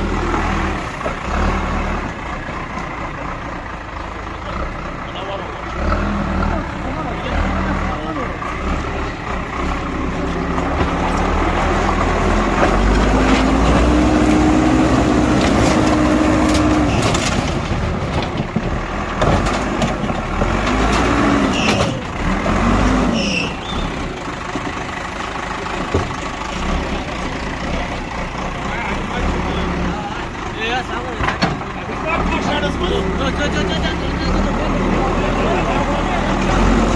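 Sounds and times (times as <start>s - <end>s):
bulldozer diesel engine rumbling: 0.0s - 36.9s
knocks and clatter: 15.2s - 22.2s, 31.2s - 31.8s.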